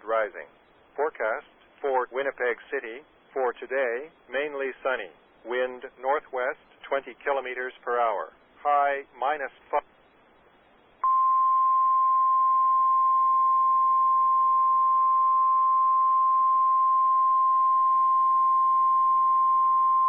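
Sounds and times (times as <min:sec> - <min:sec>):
faint radio hiss: 0:00.0 - 0:11.6.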